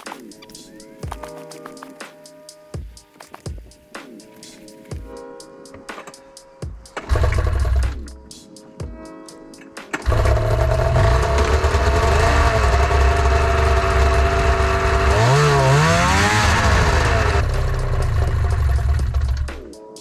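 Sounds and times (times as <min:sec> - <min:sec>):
two-stroke snowmobile engine revving: 0:07.1 - 0:07.9, 0:10.0 - 0:19.5.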